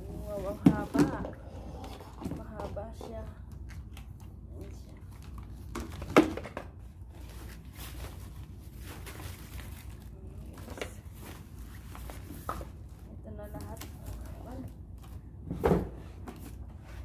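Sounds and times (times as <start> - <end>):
low steady hum: 0.0 - 17.0
packaging rustling: 5.0 - 15.2.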